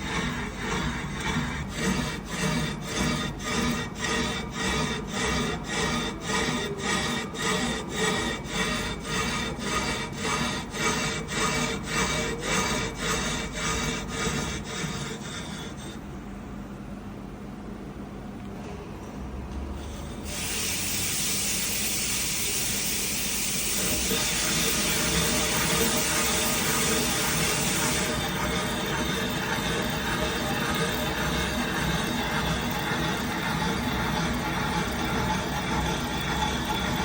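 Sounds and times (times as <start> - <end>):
rhythmic metal scraping: 0.0 - 16.0, 23.4 - 37.0
machine humming: 23.5 - 37.0.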